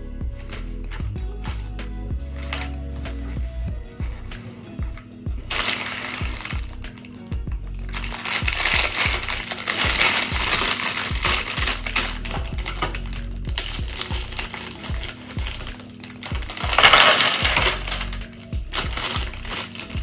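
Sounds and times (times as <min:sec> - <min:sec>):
background music: 0:00.0 - 0:20.0
plastic bags crinkling: 0:04.4 - 0:07.2, 0:07.8 - 0:20.0.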